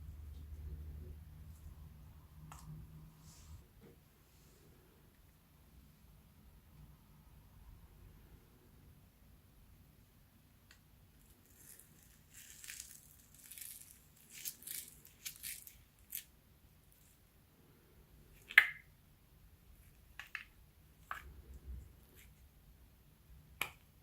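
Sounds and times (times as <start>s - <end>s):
slime wet crackling: 11.4s - 16.3s.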